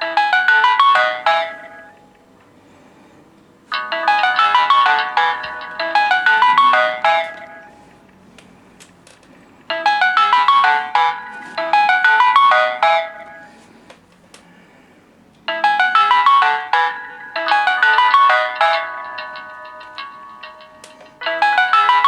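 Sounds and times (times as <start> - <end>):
chiming phone ringtone: 0.0 - 2.3, 3.7 - 8.0, 9.7 - 13.8, 15.5 - 22.0.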